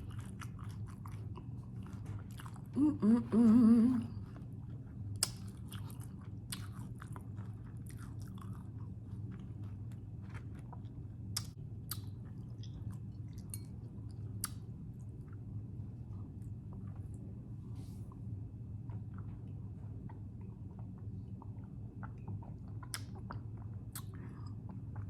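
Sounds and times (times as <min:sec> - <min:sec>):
crunchy taco chewing: 0:00.0 - 0:02.8, 0:04.2 - 0:13.4
person humming mmm: 0:02.8 - 0:04.3
wet mouth clicks: 0:05.2 - 0:05.5, 0:22.0 - 0:24.6.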